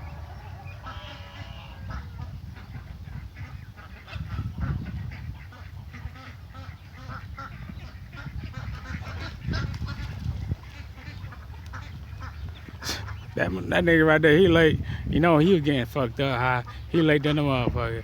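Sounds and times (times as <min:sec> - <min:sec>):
ducks and geese calling: 0:00.0 - 0:18.0
steady low rumble: 0:00.0 - 0:18.0.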